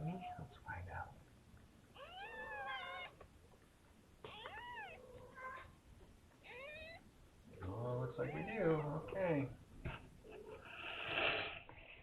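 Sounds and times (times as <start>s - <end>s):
cat meowing: 2.0s - 3.2s, 4.2s - 5.8s, 6.4s - 7.1s, 8.2s - 9.5s.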